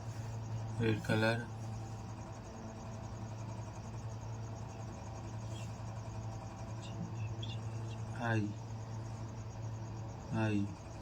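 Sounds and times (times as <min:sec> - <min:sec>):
crickets chirping: 0:00.0 - 0:11.0.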